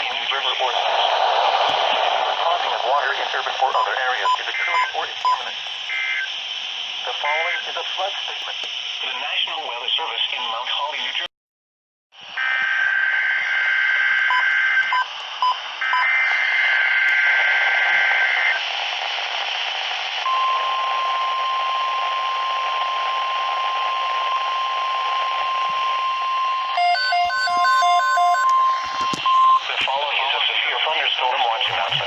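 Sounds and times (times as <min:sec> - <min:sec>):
rapid two-tone beeping: 0:03.7 - 0:06.3, 0:20.3 - 0:29.9
steady alarm tone: 0:20.3 - 0:29.9.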